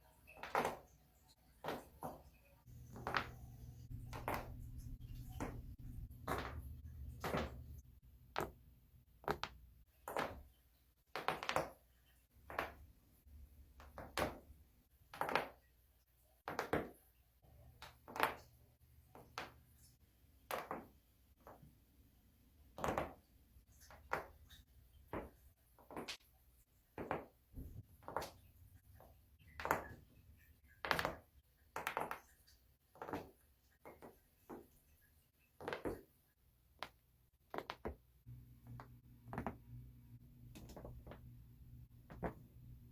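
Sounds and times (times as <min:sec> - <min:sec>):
spinal joints cracking: 0:36.8 - 0:38.1, 0:38.7 - 0:39.7, 0:40.5 - 0:41.3, 0:42.0 - 0:42.6.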